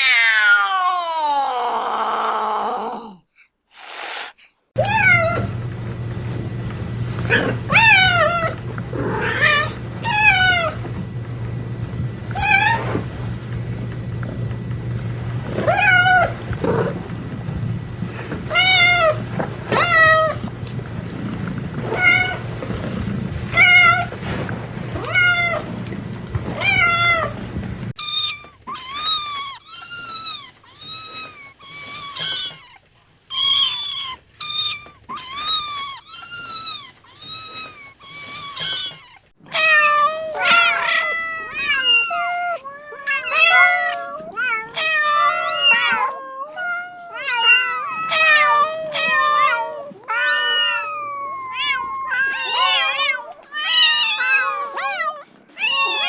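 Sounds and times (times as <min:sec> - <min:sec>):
cat meowing: 0:00.0 - 0:03.2, 0:28.0 - 0:56.0
higher-pitched cat meowing: 0:00.0 - 0:03.2, 0:28.0 - 0:56.0
low hum: 0:04.8 - 0:28.0.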